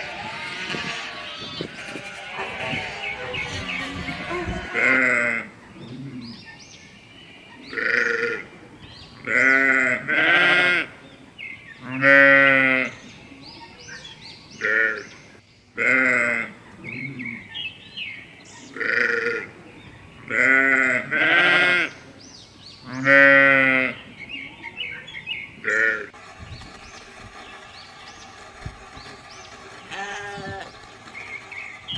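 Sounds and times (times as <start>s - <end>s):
sheep bleating: 0.0s - 6.3s, 7.7s - 8.4s, 9.2s - 10.9s, 11.8s - 13.0s, 15.8s - 16.6s, 18.8s - 19.5s, 20.3s - 22.0s, 22.9s - 24.0s, 25.6s - 26.1s, 29.9s - 30.7s.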